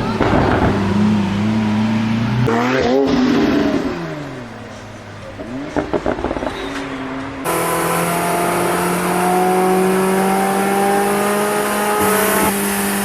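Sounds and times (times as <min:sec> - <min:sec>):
exhaust pops and crackles: 0:00.0 - 0:02.4, 0:04.6 - 0:07.5
sports car engine revving: 0:00.0 - 0:13.0.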